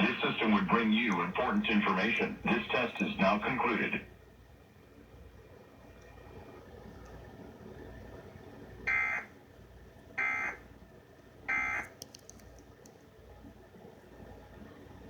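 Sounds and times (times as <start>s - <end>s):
steady hiss: 0.0s - 4.0s
faint clicks: 11.8s - 13.1s.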